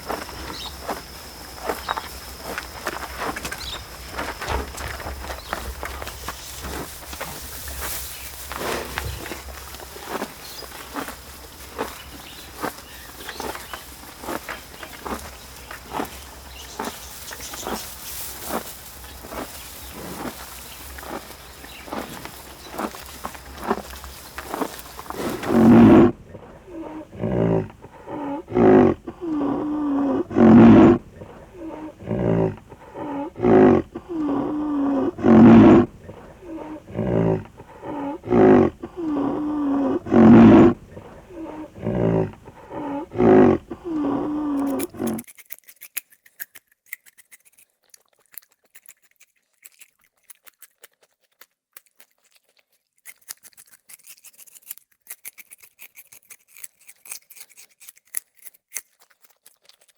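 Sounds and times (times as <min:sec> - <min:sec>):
large animal calling: 0:21.1 - 0:45.2.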